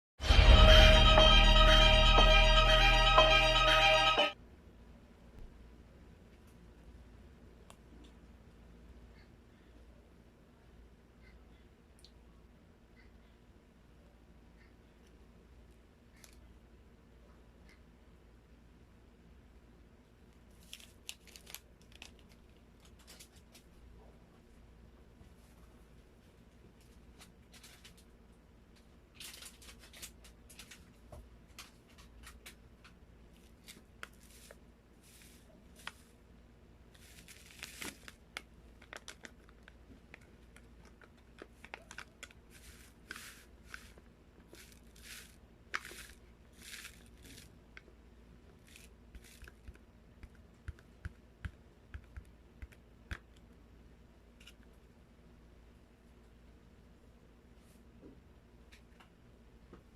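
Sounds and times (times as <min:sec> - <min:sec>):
bread tearing and crinkling: 0:20.5 - 0:23.6, 0:37.0 - 0:47.5.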